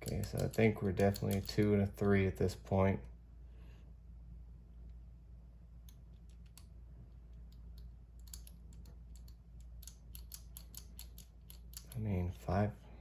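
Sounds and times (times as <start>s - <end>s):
padlock dial wheels clicking: 0.0s - 1.9s, 5.8s - 12.1s.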